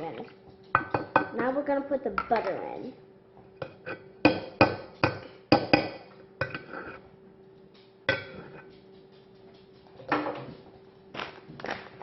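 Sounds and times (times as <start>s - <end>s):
utensil knocking against pot: 0.7s - 1.4s, 3.6s - 6.7s, 8.1s - 8.9s.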